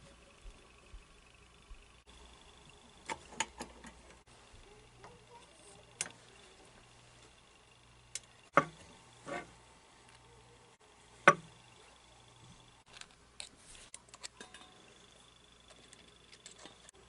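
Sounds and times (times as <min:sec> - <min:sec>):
small parts clicking and tapping: 0:02.5 - 0:07.4, 0:08.0 - 0:08.8, 0:12.8 - 0:17.0.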